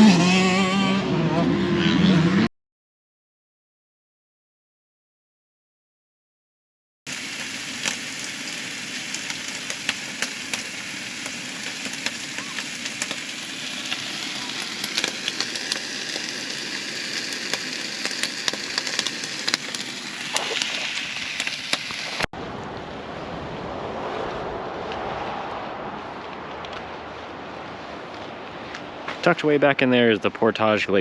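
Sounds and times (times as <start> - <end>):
rain pattering: 7.1 - 31.0
sharp raindrop ticks: 7.4 - 22.3
wind rushing: 22.3 - 29.1.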